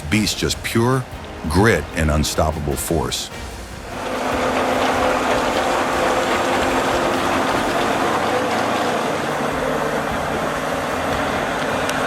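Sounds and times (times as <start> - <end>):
dense noisy wash: 0.0 - 12.0
tractor engine under load: 3.4 - 12.0.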